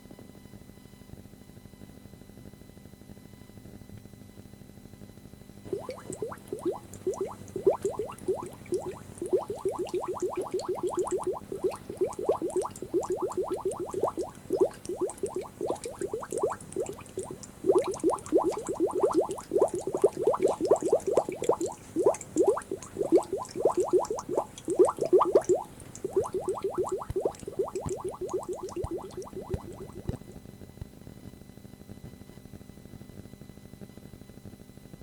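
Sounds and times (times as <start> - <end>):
bubbling gurgling water: 5.7 - 30.4
faint tape hiss: 5.7 - 31.4.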